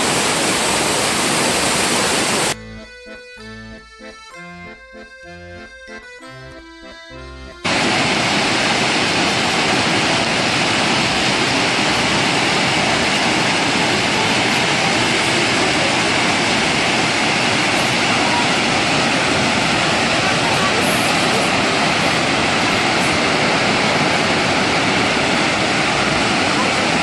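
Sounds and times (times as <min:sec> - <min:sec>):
waterfall rushing: 0:00.0 - 0:02.6, 0:07.6 - 0:27.0
accordion music: 0:02.5 - 0:08.5, 0:17.7 - 0:24.4.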